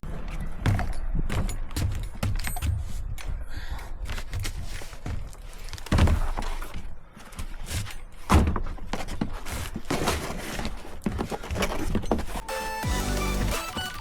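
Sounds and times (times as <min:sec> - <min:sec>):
knocks and clatter: 0:00.1 - 0:03.4.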